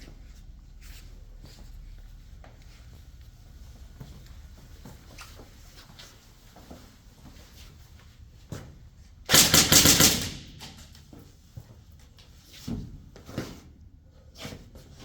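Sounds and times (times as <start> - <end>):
soft shuffling: 0.0 - 8.3
airsoft gun rapid burst: 9.3 - 10.9.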